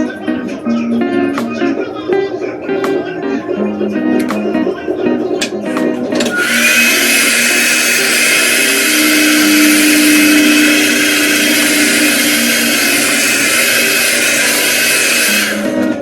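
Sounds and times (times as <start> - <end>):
hair dryer running: 6.2 - 16.0.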